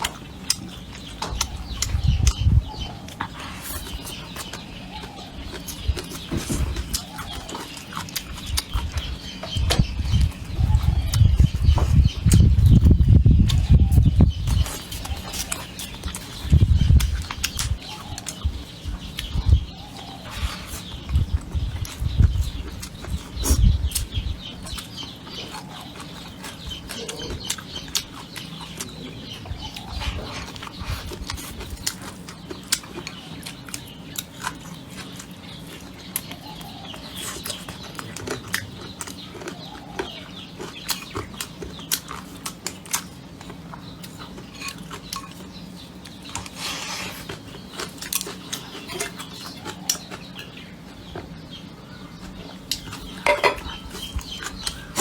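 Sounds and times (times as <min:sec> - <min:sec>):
chickens clucking: 0:00.0 - 0:55.0.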